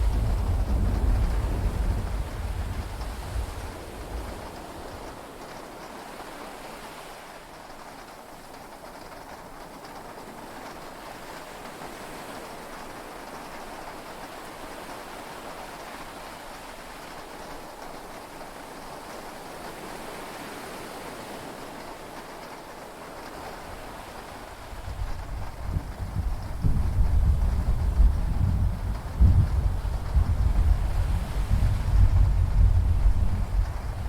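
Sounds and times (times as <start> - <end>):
low rumble of thunder: 0.0 - 5.3, 24.2 - 34.0
heavy rain: 0.0 - 34.0.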